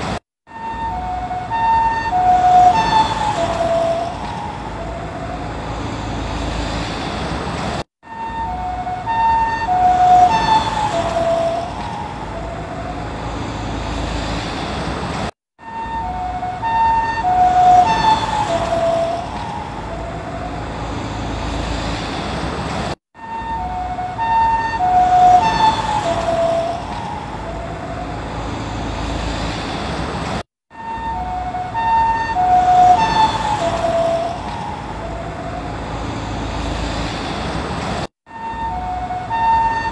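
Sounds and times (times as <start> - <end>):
two-tone ambulance siren passing: 0.0 - 7.2, 8.0 - 14.7, 15.6 - 22.0, 23.2 - 29.7, 30.7 - 37.5, 38.3 - 39.9.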